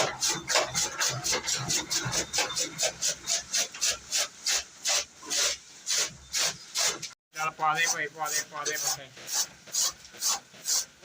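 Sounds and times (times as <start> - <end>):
chaff cutter chopping fodder: 7.7 - 11.0.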